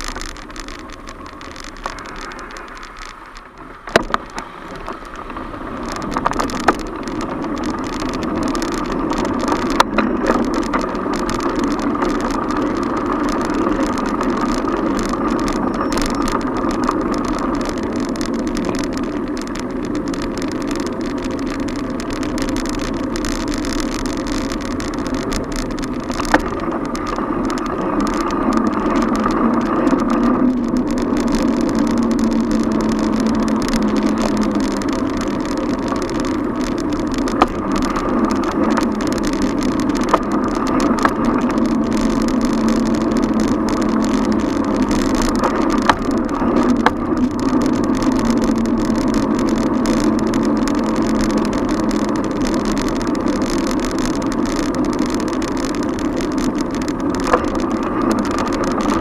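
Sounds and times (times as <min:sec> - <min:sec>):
sharp clicks or knocks: 0:00.0 - 0:19.7
tyres rumbling: 0:00.0 - 0:59.0
wind: 0:00.0 - 0:59.0.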